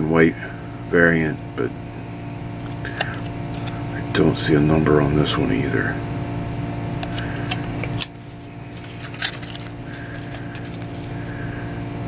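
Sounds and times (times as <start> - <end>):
electrical fan hum: 0.0 - 12.0
cards sliding and clicking: 2.6 - 3.8, 7.0 - 11.2.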